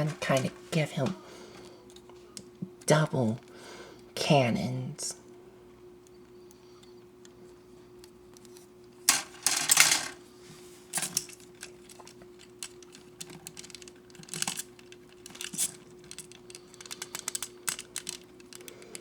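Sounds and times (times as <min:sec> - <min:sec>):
plastic parts clattering and clicking: 0:09.1 - 0:10.2, 0:10.9 - 0:19.0.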